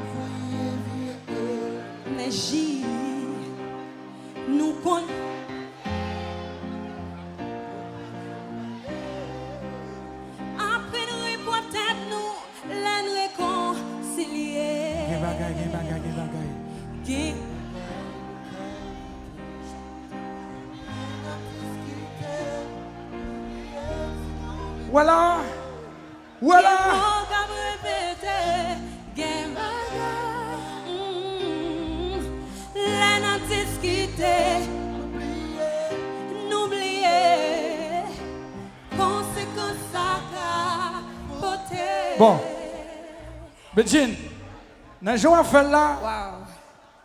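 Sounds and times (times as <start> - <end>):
person singing with vibrato: 0.0 - 44.4
sustained keyboard chords: 14.3 - 44.1
bass: 14.9 - 26.1, 26.7 - 30.8, 31.4 - 35.9, 43.2 - 46.5.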